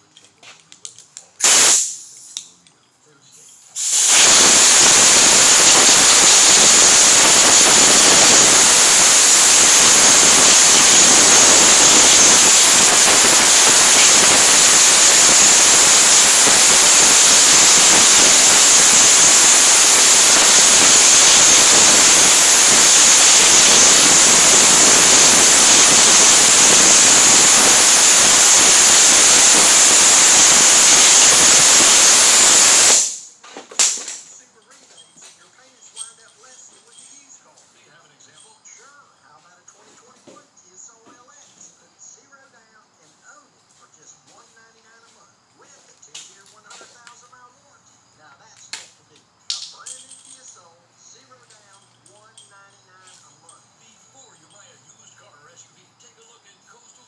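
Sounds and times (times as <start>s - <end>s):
compressed air blow gun hissing: 1.4s - 2.3s, 3.8s - 34.1s.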